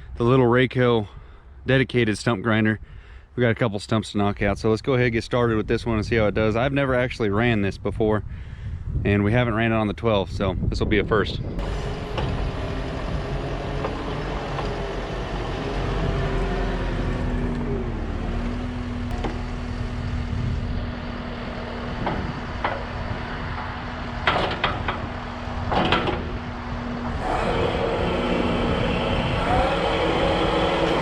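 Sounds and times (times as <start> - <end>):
diesel engine running: 11.6 - 31.0
stump grinder whine: 11.6 - 31.0
sharp knocks: 22.0 - 26.4.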